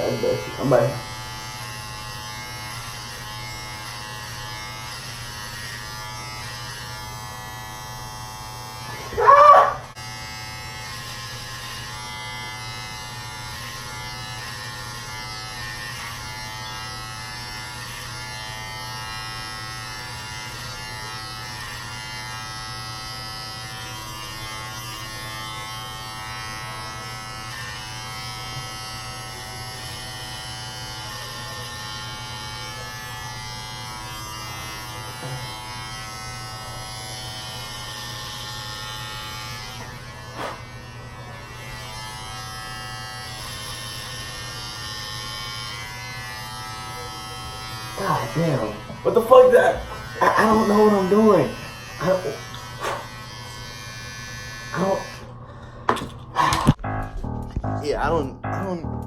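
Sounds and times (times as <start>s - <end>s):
electric hair trimmer buzzing: 0.0s - 57.6s.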